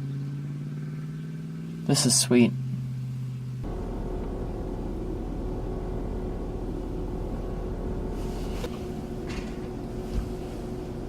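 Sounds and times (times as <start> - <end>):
car engine hum inside cabin: 0.0 - 11.0
low rumble: 2.6 - 11.0.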